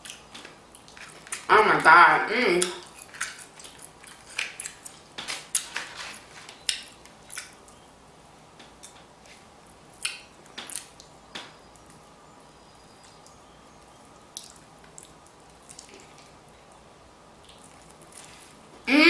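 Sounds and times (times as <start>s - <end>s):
crab shells cracking by hand: 2.8s - 6.0s, 10.0s - 11.5s.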